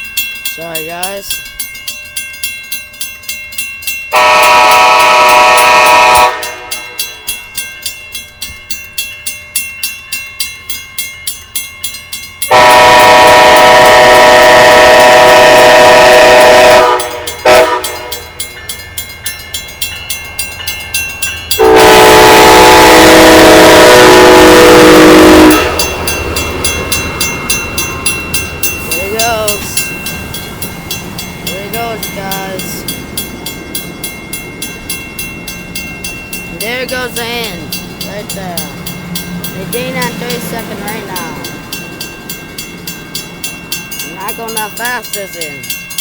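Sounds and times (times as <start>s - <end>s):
railroad crossing bell ringing: 0.0s - 46.0s
locomotive horn blasts: 4.1s - 7.0s, 12.5s - 18.2s, 21.6s - 25.8s.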